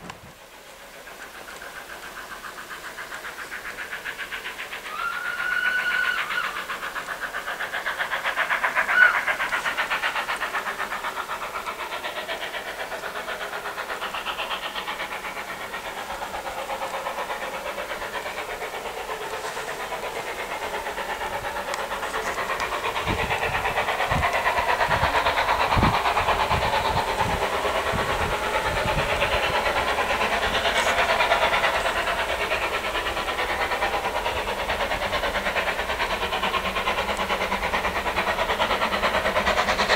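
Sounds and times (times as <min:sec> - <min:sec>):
steam locomotive exhaust beating: 0:00.0 - 0:39.9
short train whistle: 0:04.9 - 0:06.6.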